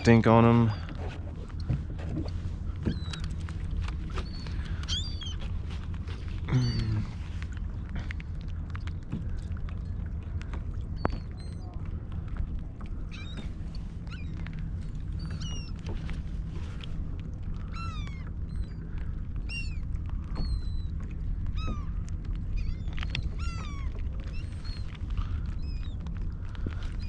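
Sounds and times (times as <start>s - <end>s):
steady low rumble: 0.0s - 27.0s
seagulls calling: 0.1s - 7.2s, 12.9s - 16.8s, 17.6s - 27.0s.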